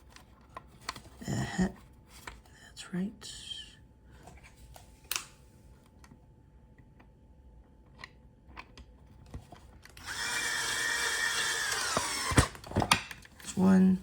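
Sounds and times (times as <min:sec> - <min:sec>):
cordless drill whining: 0:10.0 - 0:12.7.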